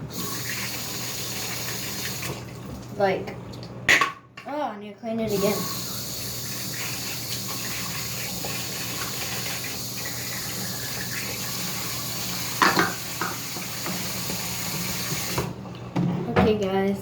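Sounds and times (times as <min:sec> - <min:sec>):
bathroom tap running: 0:00.0 - 0:03.9, 0:05.2 - 0:15.9
knock against sink: 0:12.6 - 0:14.0.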